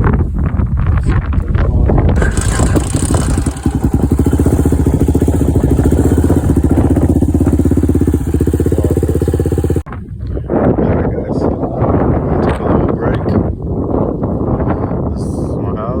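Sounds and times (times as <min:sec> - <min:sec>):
wind noise on microphone: 0:00.0 - 0:16.0
atv engine running: 0:01.4 - 0:09.9.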